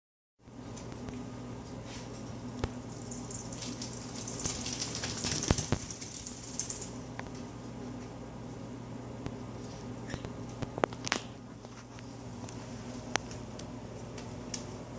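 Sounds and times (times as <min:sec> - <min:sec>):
air blowing from heating vent: 0:00.4 - 0:14.9
rustling hiss with light clicks: 0:00.7 - 0:08.2.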